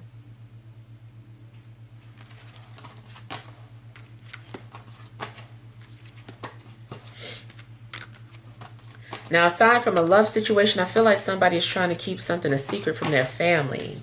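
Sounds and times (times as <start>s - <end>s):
steady low hum: 0.0s - 14.0s
cards being shuffled: 2.0s - 10.1s.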